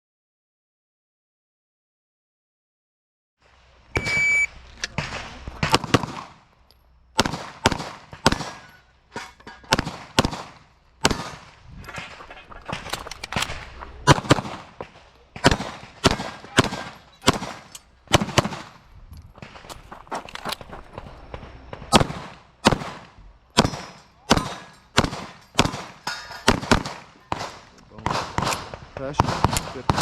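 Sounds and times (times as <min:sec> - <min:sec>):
shot timer beep: 0:04.0 - 0:04.6
pistol shots: 0:04.8 - 0:06.5, 0:07.1 - 0:08.9, 0:09.6 - 0:18.8, 0:20.5 - 0:30.0.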